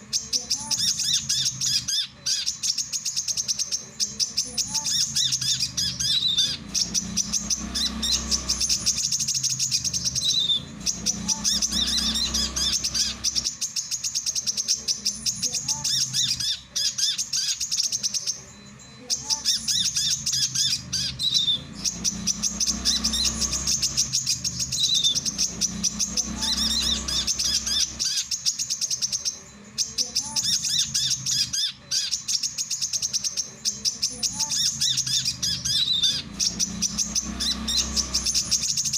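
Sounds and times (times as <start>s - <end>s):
sunbird twittering chirps: 0.0s - 38.9s.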